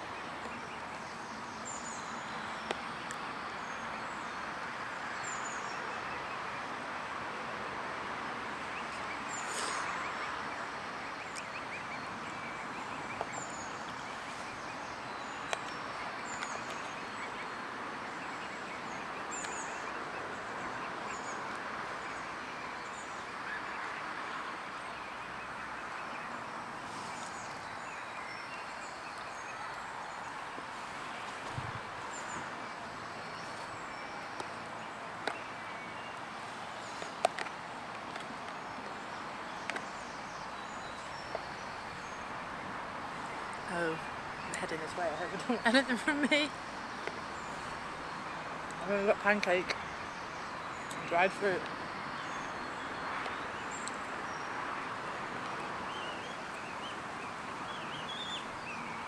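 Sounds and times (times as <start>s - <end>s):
distant traffic hum: 0.0s - 59.0s
outdoor background hiss: 0.0s - 59.0s
faint bird calls: 8.6s - 37.4s.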